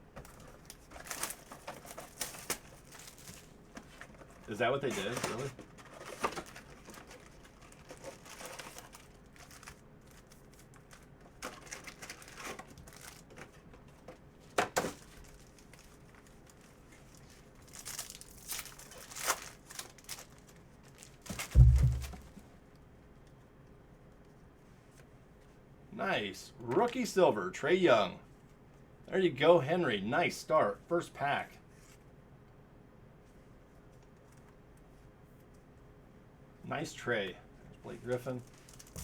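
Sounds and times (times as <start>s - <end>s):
plastic wrapping crinkling and tearing: 0.3s - 3.6s, 4.9s - 13.6s, 14.8s - 22.2s, 38.2s - 39.0s
dull thump: 21.4s - 22.4s.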